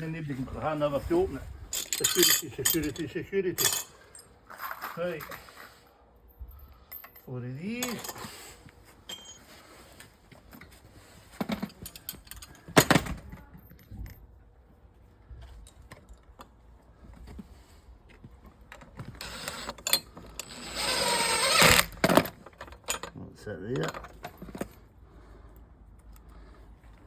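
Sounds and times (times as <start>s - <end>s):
small screws clicking and rattling: 1.7s - 5.4s, 11.5s - 12.9s, 18.7s - 24.8s
metal rattling and whirring: 18.8s - 23.1s.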